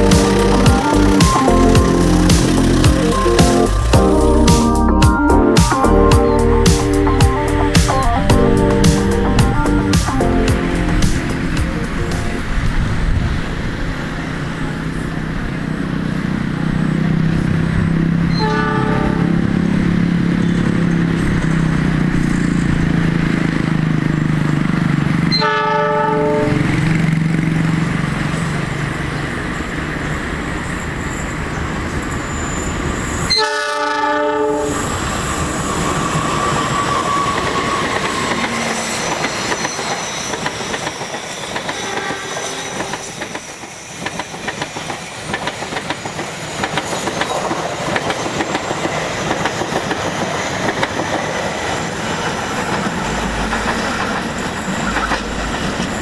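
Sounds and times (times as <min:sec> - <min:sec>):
train wheels clacking on rails: 0:00.0 - 0:04.8, 0:34.7 - 0:56.0
locomotive engine rumbling: 0:00.0 - 0:25.6, 0:26.2 - 0:56.0
train horn blasts: 0:18.3 - 0:19.7, 0:25.3 - 0:26.9, 0:33.3 - 0:35.8, 0:41.6 - 0:43.2.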